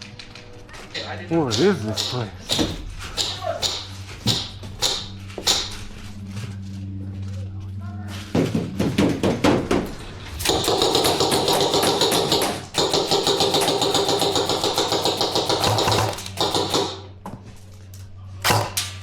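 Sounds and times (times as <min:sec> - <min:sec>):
airsoft rifle firing bursts: 0:10.4 - 0:17.0.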